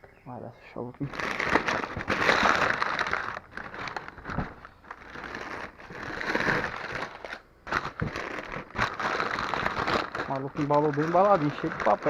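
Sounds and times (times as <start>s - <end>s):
packing paper crumpling: 1.0s - 12.0s.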